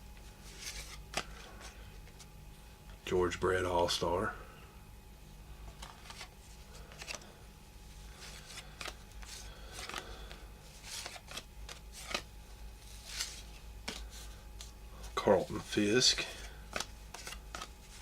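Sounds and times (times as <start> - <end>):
cardboard cards swishing: 0.4 - 2.2, 8.1 - 14.8, 16.3 - 18.0.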